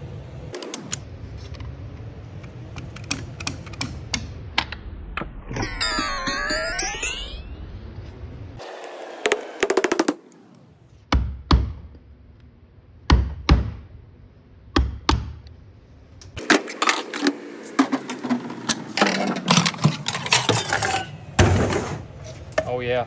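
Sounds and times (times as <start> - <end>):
metal parts clattering and scraping: 16.4 - 22.6.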